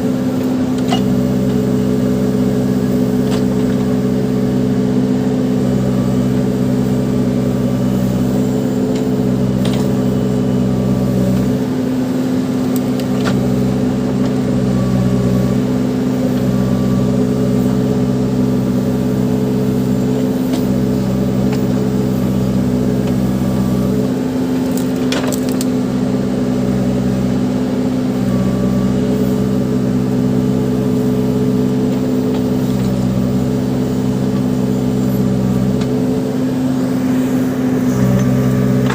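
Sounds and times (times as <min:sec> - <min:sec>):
diesel engine under load: 0:00.0 - 0:38.9.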